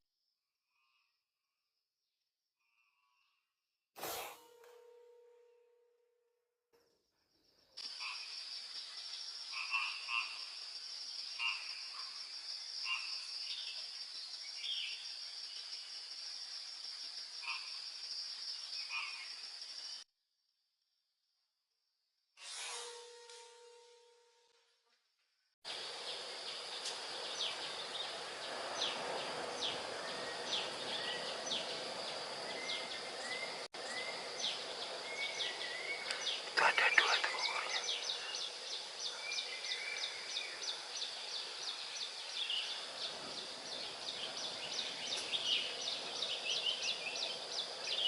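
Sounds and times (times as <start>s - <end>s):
insects chirring: 7.2s - 20.0s, 25.7s - 48.0s.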